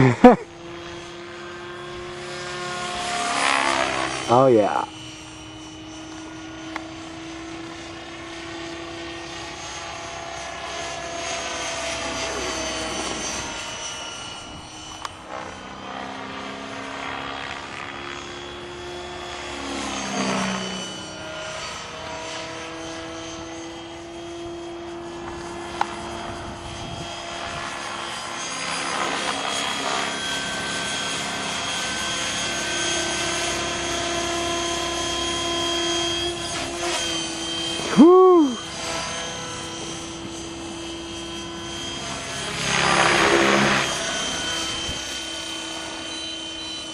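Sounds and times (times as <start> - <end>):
rc helicopter motor whining: 0.0 - 46.9
rotor blades beating: 0.0 - 46.9.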